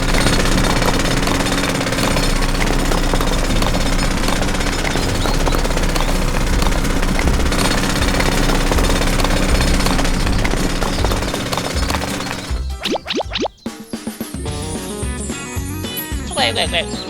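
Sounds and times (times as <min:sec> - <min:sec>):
small electric motor running: 0:00.0 - 0:12.9.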